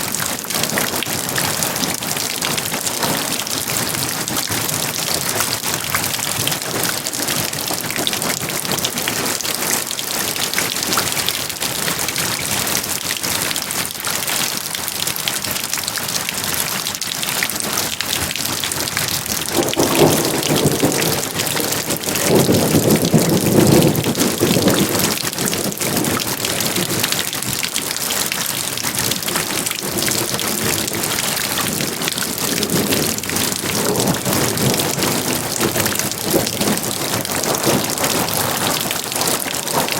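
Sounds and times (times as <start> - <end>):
heavy rain falling: 0.0 - 39.9
thunder rumbling: 19.2 - 26.2, 31.6 - 39.9.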